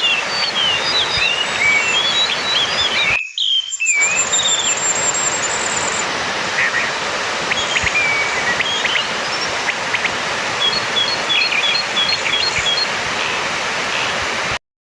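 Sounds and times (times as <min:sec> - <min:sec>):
thrush singing whistled phrases: 0:00.0 - 0:12.9
steady loud hiss: 0:03.9 - 0:14.6.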